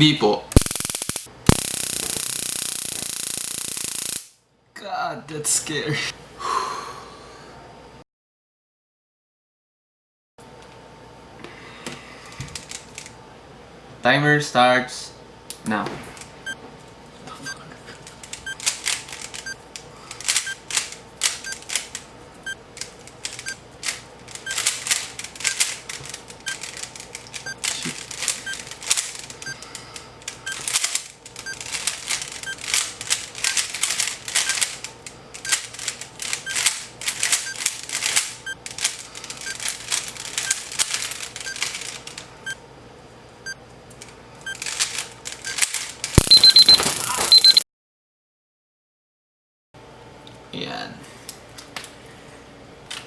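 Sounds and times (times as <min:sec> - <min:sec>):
cube puzzle layers clicking: 0:00.6 - 0:04.3, 0:46.2 - 0:47.6.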